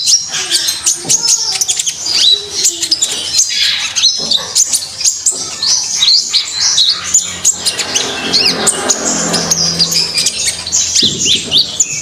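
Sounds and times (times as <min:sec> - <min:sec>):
songbird singing: 0:00.0 - 0:12.0.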